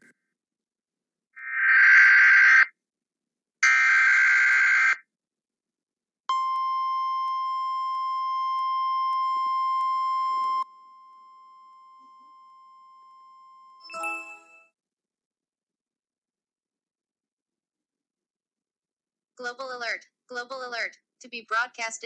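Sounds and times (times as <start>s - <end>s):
harsh data screech: 1.4s - 2.7s.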